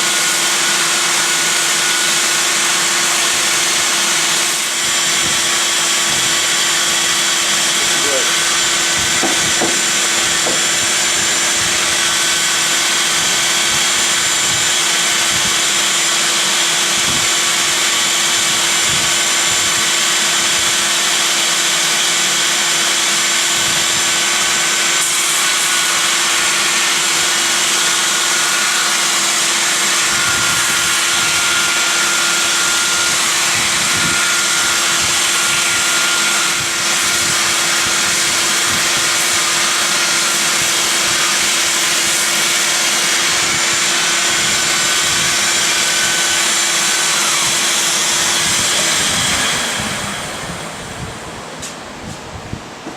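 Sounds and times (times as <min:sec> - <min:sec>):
belt sander whining: 0:00.0 - 0:51.9
vacuum drawing dust: 0:00.0 - 0:52.9.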